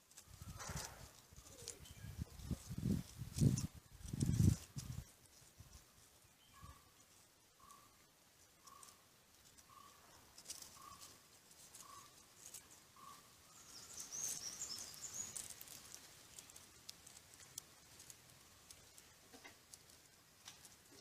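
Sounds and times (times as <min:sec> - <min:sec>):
high warbling bird chirp: 0:01.4 - 0:02.3, 0:06.2 - 0:07.0, 0:13.0 - 0:15.5
faint bird calls: 0:06.4 - 0:07.0, 0:07.6 - 0:09.0, 0:09.6 - 0:15.5
faint ticks: 0:08.6 - 0:13.2, 0:14.4 - 0:21.0.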